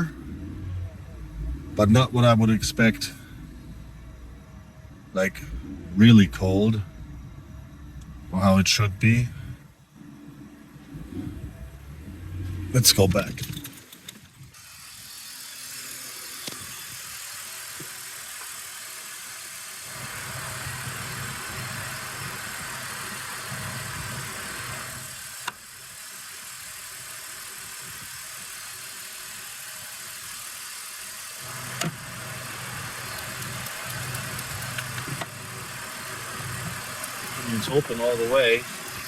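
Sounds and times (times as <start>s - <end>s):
car engine idling: 0.0s - 14.6s, 31.4s - 39.0s
compressor hum: 0.0s - 14.6s, 31.4s - 39.0s
compressor clutch clicks: 32.8s - 39.0s.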